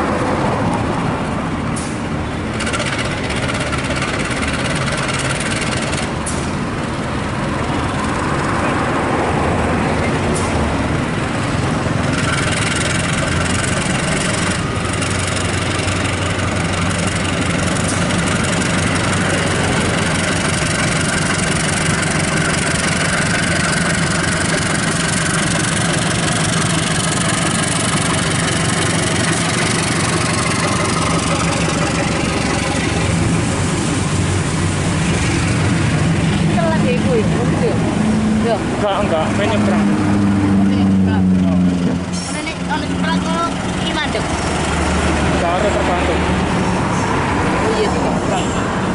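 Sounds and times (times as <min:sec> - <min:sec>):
diesel train engine running: 0:00.0 - 0:48.9.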